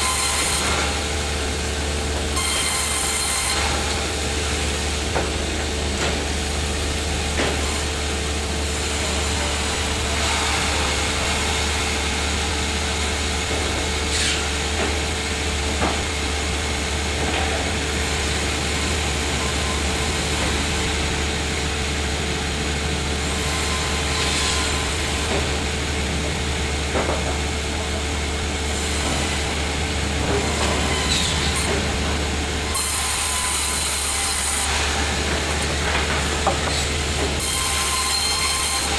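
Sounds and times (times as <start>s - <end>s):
sawmill machinery running: 0.0s - 38.9s
saw whine: 37.2s - 38.9s.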